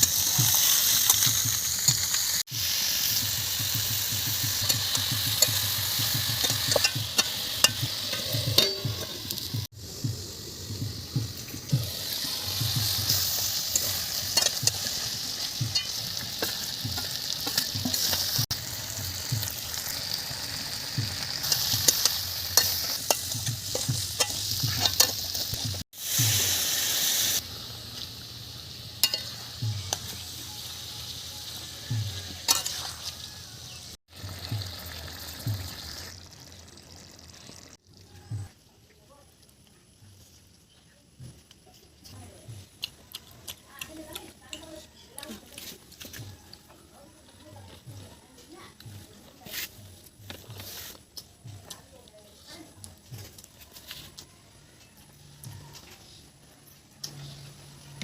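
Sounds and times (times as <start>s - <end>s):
curry sizzling in hot oil: 0.0s - 38.6s
spatula scraping and knocking pan: 3.2s - 9.7s, 10.8s - 18.5s, 19.3s - 26.4s, 29.0s - 30.3s, 31.9s - 33.3s.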